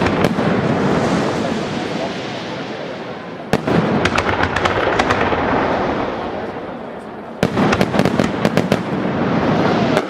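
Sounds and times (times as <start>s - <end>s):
crackling firework pops: 0.0s - 1.5s, 3.5s - 5.7s, 9.7s - 10.0s
firework bang: 0.0s - 6.7s, 7.4s - 10.0s
fireworks rumble: 0.0s - 10.0s.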